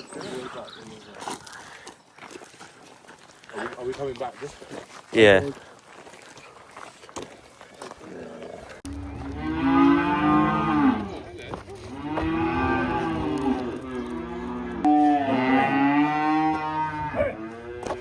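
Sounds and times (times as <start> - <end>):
cattle mooing: 8.3 - 18.0.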